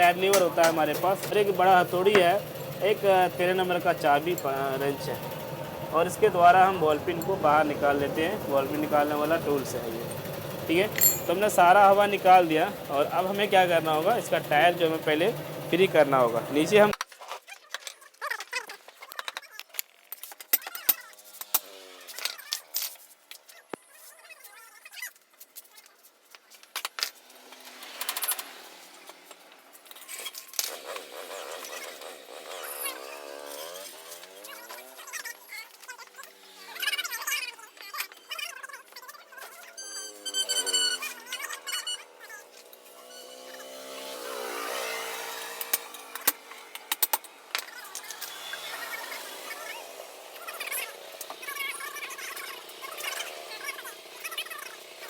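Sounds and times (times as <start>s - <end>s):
hand tools clicking on metal: 0.0s - 6.3s, 6.9s - 15.1s
vehicle engine passing: 0.0s - 16.9s, 39.8s - 55.0s
metal tools clinking on wheel: 0.0s - 17.0s, 17.6s - 24.7s, 25.6s - 31.1s.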